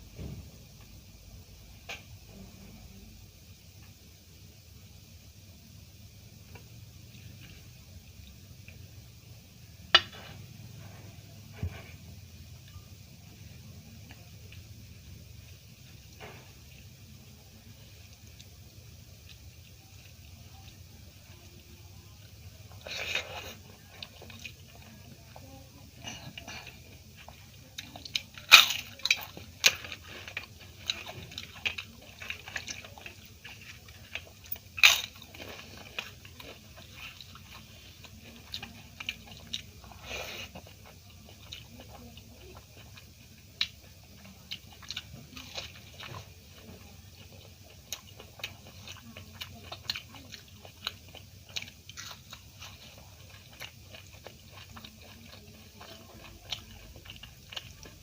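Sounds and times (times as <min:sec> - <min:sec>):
person crunching fried food: 0:22.2 - 0:58.0.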